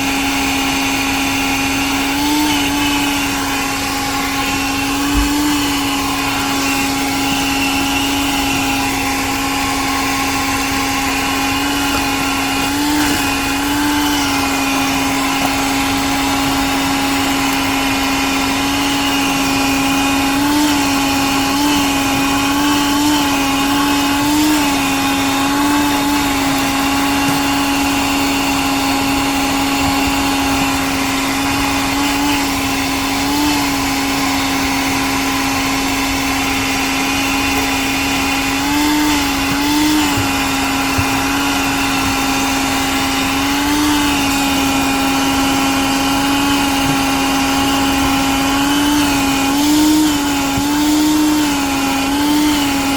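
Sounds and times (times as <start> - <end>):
shop vacuum motor whine: 0.0 - 52.9.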